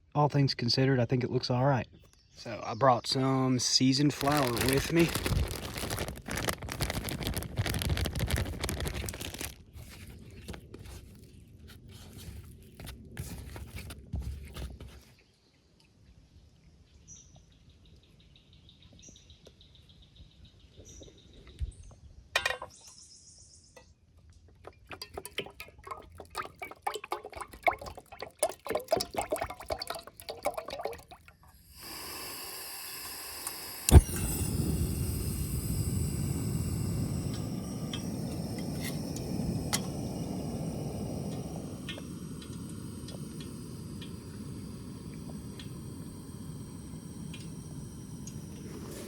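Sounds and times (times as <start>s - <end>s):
deep-frying sizzle in hot oil: 4.2s - 9.7s, 28.6s - 48.7s.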